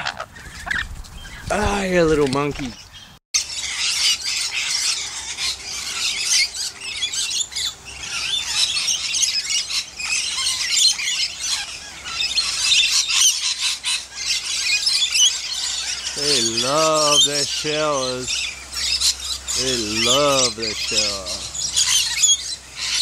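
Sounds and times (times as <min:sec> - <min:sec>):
lorikeets chattering and screeching: 0:00.0 - 0:23.0.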